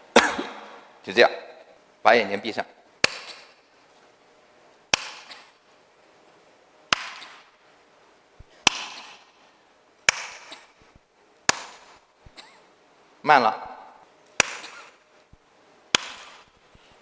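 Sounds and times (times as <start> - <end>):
sharp hand claps: 3.0 - 3.6, 4.9 - 5.6, 6.9 - 7.6, 8.6 - 9.4, 10.1 - 10.8, 11.5 - 12.0, 14.4 - 15.0, 15.9 - 16.6.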